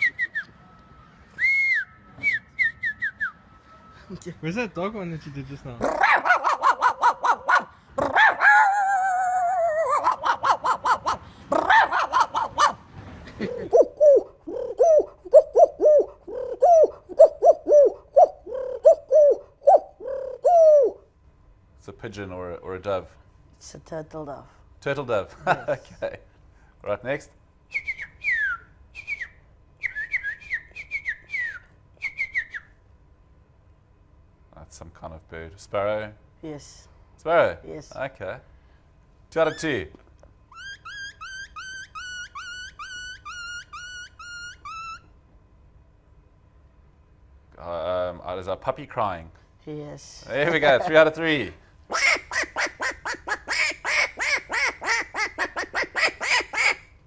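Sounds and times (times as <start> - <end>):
person whistling bird chirps: 0.0 - 0.5, 1.4 - 3.4, 27.7 - 32.7, 40.6 - 45.0
person imitating dog barks: 5.8 - 12.8, 13.7 - 21.0.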